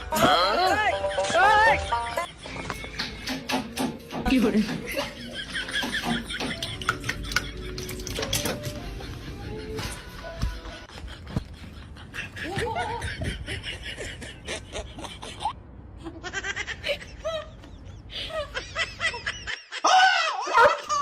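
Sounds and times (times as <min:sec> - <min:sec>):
people laughing: 0:00.0 - 0:03.6, 0:04.8 - 0:15.6.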